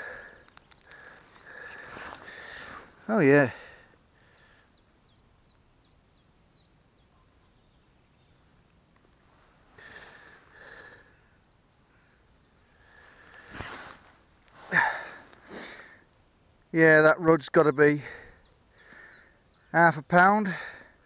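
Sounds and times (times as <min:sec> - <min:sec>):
soft noises: 0:00.0 - 0:03.6, 0:12.9 - 0:16.0
small bird chirping: 0:00.0 - 0:09.2, 0:09.8 - 0:14.6, 0:15.2 - 0:20.3
rustle: 0:00.0 - 0:21.0.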